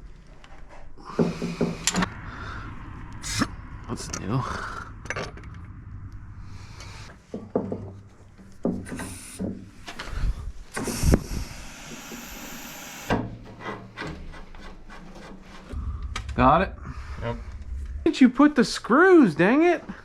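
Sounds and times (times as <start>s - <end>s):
hissing rush: 1.0s - 13.2s, 15.6s - 20.0s
knocks and clunks of handling: 7.3s - 10.2s.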